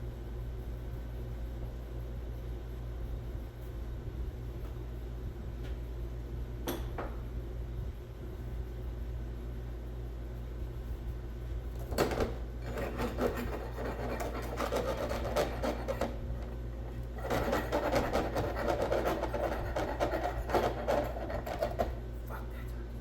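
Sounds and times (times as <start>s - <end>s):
steady low hum: 0.0s - 23.0s
rasping scraping strokes: 12.6s - 16.5s, 17.2s - 22.0s.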